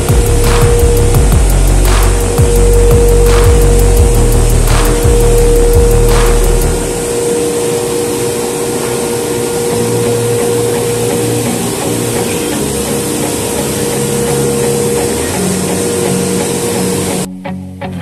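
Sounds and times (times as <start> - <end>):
workshop machine whirring: 0.0 - 17.3
background music: 0.0 - 18.0.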